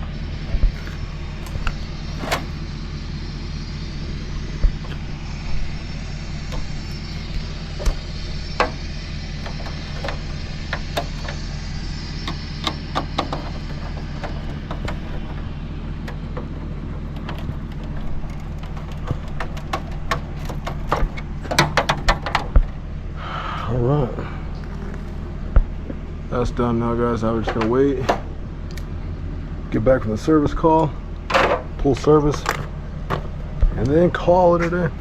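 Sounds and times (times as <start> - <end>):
engine hum: 0.0 - 35.0
clicks and light knocks: 12.2 - 22.8.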